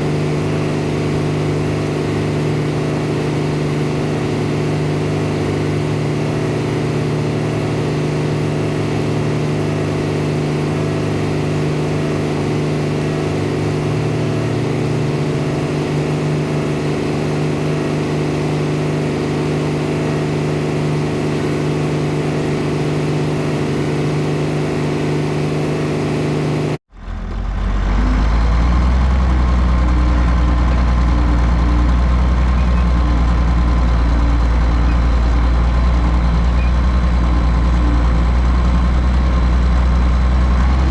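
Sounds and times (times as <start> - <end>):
deep heavy engine running: 0.0 - 40.9
farm machinery engine running: 0.0 - 40.9.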